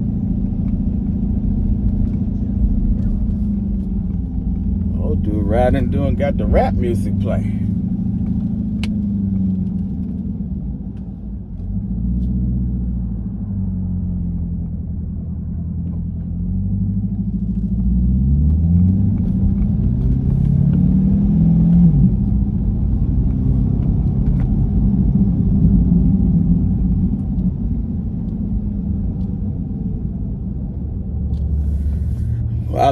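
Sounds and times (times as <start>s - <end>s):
car engine accelerating: 0.0s - 32.9s.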